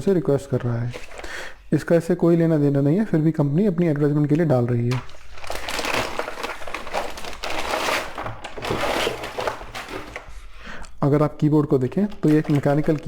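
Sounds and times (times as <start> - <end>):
plastic packaging crinkling: 0.0 - 1.6, 4.8 - 10.5, 11.8 - 13.0.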